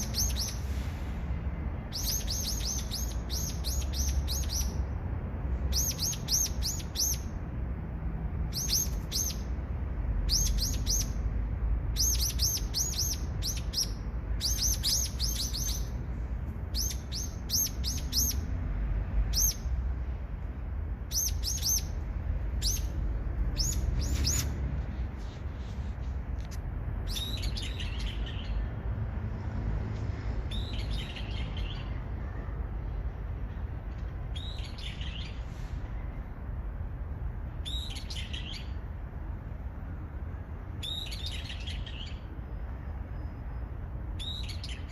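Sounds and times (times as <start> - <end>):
songbird singing: 0.0 - 0.8, 1.8 - 5.0, 5.6 - 7.4, 8.5 - 19.8, 21.0 - 24.7, 27.0 - 28.8, 30.4 - 36.1, 37.5 - 38.9, 40.7 - 44.9.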